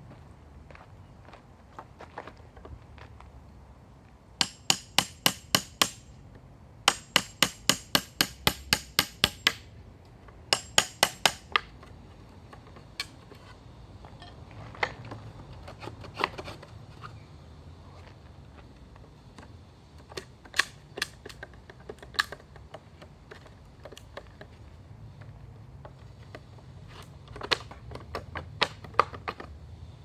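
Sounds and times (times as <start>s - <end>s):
hammer striking metal chisel: 4.4s - 6.2s, 6.9s - 9.7s, 10.5s - 11.7s.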